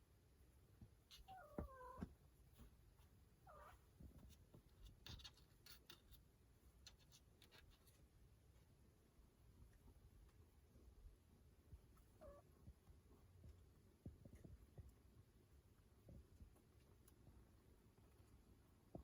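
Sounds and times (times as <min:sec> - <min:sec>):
cat meowing faintly: 0:01.1 - 0:02.1.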